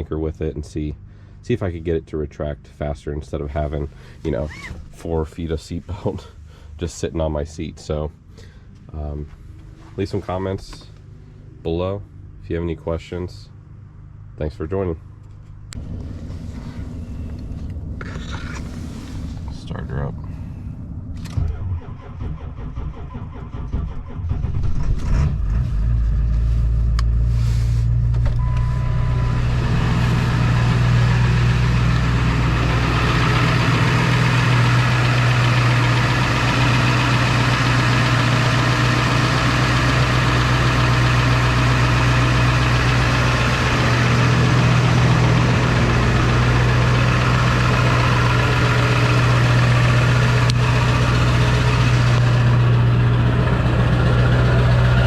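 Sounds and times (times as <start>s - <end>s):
diesel engine starting and idling: 15.7s - 55.0s
short steady beep: 28.4s - 29.4s.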